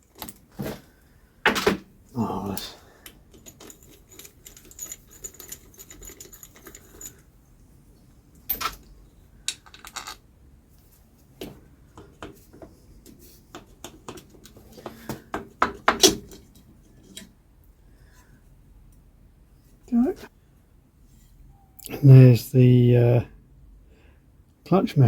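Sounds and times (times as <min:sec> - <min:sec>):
metal tools clinking: 0:03.3 - 0:07.3.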